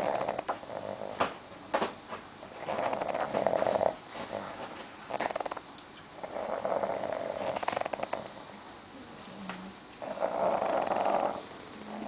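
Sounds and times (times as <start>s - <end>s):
dog snoring: 0.0s - 1.4s, 2.6s - 5.6s, 6.2s - 8.6s, 9.3s - 12.0s.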